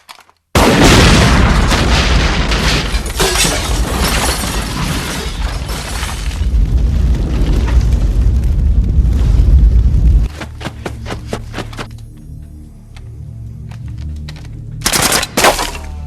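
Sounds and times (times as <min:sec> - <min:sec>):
deep bass rumbling: 0:06.3 - 0:10.4.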